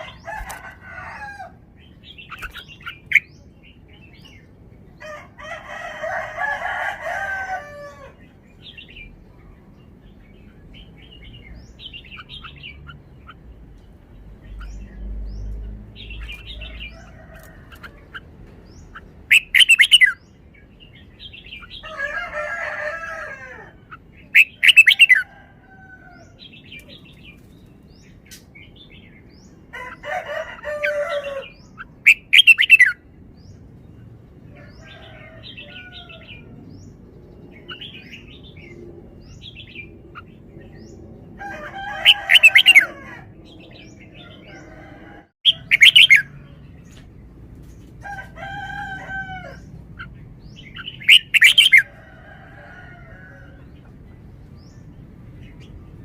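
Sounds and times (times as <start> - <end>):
bulbul singing: 45.5 - 46.3, 50.4 - 51.9.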